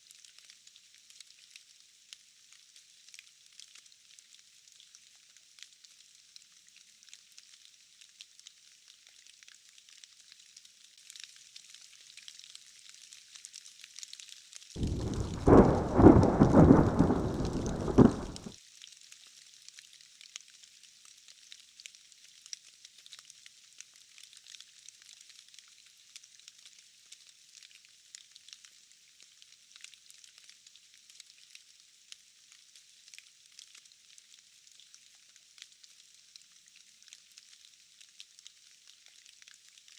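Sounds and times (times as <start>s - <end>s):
rain hissing: 14.8s - 18.5s
thunderclap rumbling: 14.8s - 18.5s.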